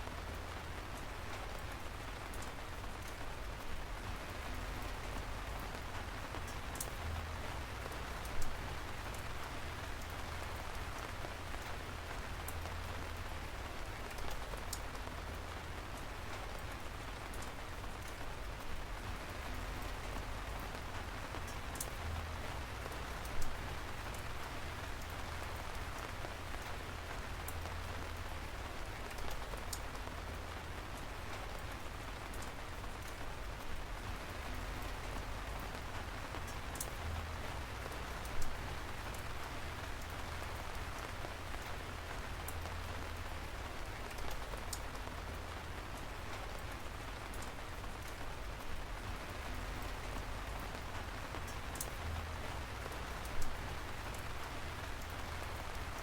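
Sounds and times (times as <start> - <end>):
steady rain: 0.0 - 56.0
raindrops ticking: 0.1 - 56.0.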